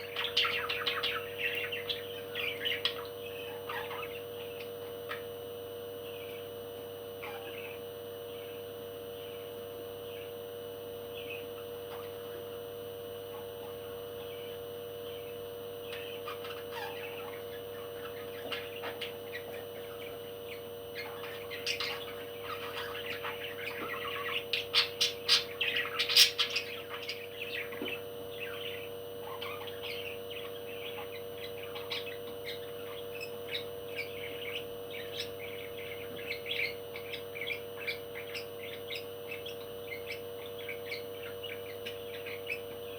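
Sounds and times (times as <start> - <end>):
parrot chirping and squawking: 0.2 - 4.2, 7.2 - 7.8, 16.0 - 20.0, 21.0 - 27.6, 29.2 - 32.2.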